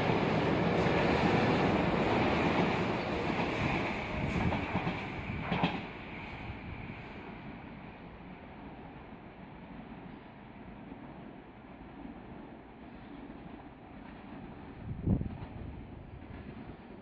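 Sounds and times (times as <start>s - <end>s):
electric train wheel rumble: 0.0s - 7.2s.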